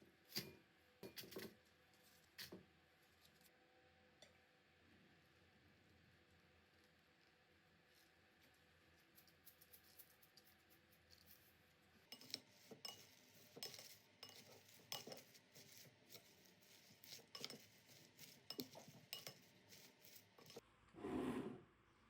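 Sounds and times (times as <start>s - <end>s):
utensils tapping a dish: 12.1s - 20.6s.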